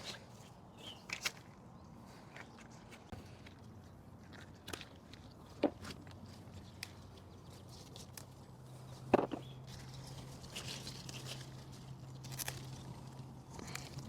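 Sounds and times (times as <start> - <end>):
pepper plant rustling: 4.6 - 14.0
stem snapping: 12.2 - 13.0.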